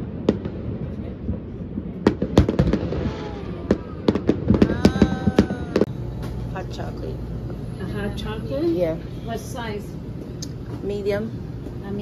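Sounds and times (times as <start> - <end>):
fireworks bangs and crackles: 0.0 - 6.6.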